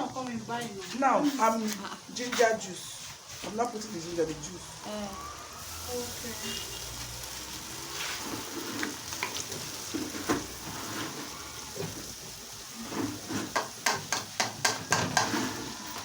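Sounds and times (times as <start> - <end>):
fried rice sizzling in a pan: 0.0 - 16.0
spoon knocking and scraping pan: 12.9 - 16.0.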